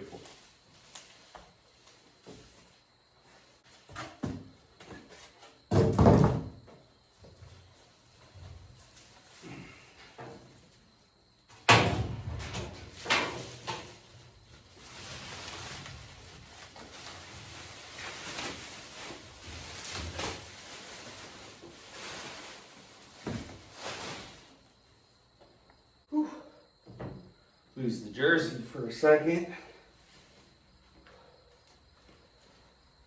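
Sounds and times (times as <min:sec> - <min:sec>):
rustling: 0:12.8 - 0:24.8.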